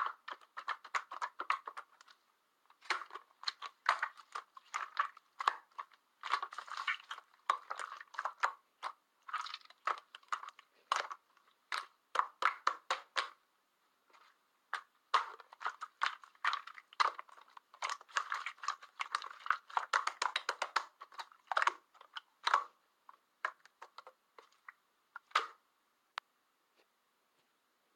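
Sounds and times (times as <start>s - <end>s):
slime squished by hand: 2.8s - 13.4s, 14.1s - 25.6s.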